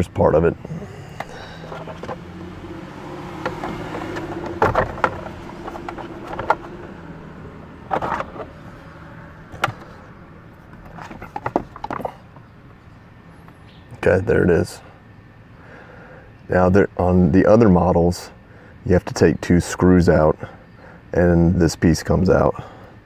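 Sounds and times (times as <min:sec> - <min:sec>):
low steady hum: 0:00.0 - 0:23.0
plastic trim clicking and knocking: 0:03.4 - 0:06.8.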